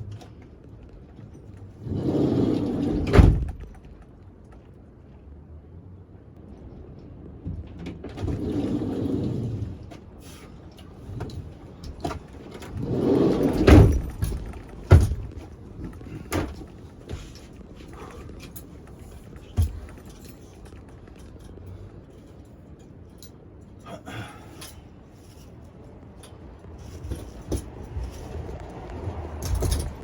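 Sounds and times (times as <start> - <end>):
bed boards scraping and rustling: 1.4 - 4.0, 7.8 - 21.8, 25.2 - 30.0.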